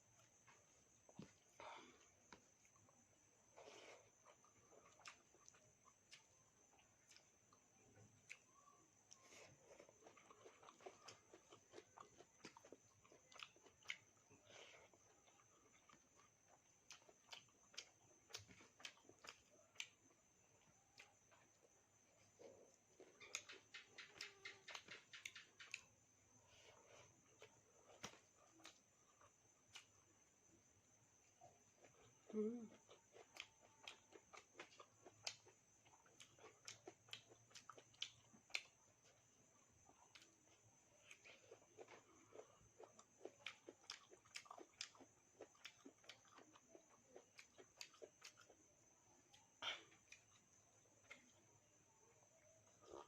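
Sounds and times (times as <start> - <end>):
crunchy chewing: 0.0 - 53.0.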